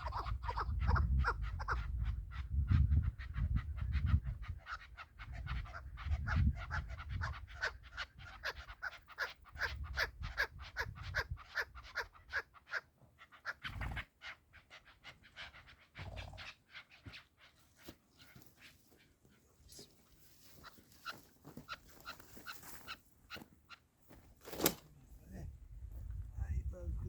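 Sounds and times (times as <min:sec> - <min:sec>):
low wind rumble: 0:00.0 - 0:04.6, 0:05.2 - 0:08.4, 0:25.2 - 0:27.0
partridge clucking calls: 0:00.0 - 0:23.9.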